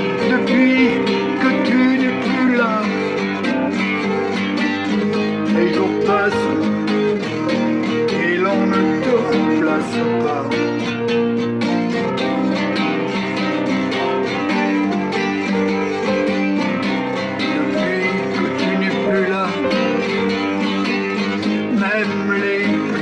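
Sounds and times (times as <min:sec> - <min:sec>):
plucked acoustic guitar: 0:00.0 - 0:23.0.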